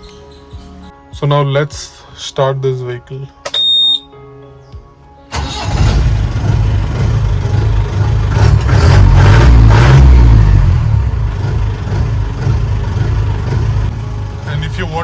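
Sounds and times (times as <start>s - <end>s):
diesel engine revving and idling: 5.3s - 15.0s.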